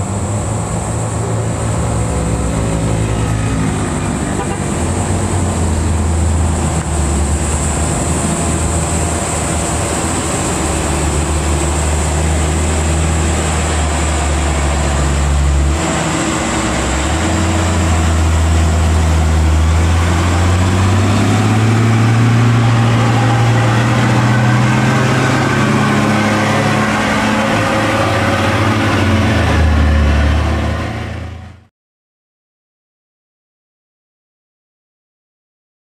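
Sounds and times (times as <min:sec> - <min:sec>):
heavy diesel truck engine: 0:00.0 - 0:31.7.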